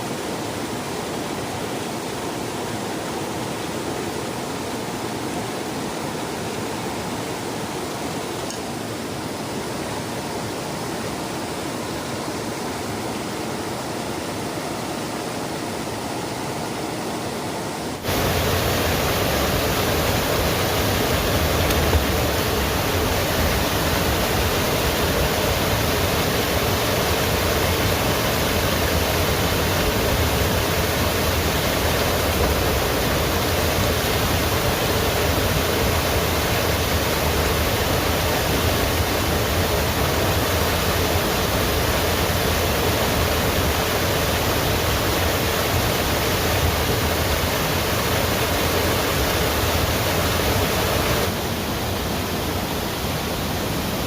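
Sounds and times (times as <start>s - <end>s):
steady rushing noise: 15.1s - 54.0s.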